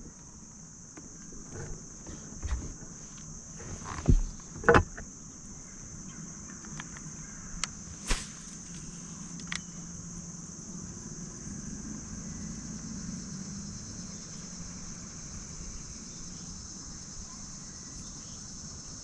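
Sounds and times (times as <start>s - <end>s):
insects buzzing: 0.0s - 19.0s.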